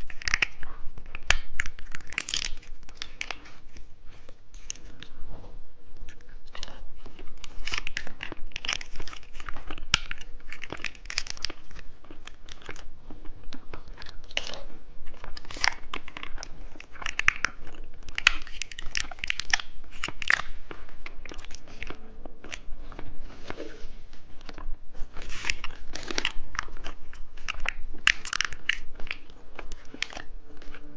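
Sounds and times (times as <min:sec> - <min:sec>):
plastic wrapper crinkling and tearing: 0:00.0 - 0:03.9, 0:06.0 - 0:23.8, 0:24.4 - 0:30.9
wet chewing: 0:00.0 - 0:05.2, 0:06.0 - 0:30.9.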